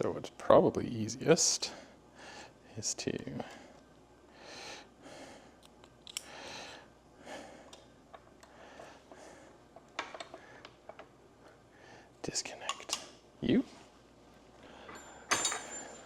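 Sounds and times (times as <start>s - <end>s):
soft breathing: 1.6s - 12.6s, 13.7s - 16.0s
clicks of engine parts handled: 5.6s - 6.3s.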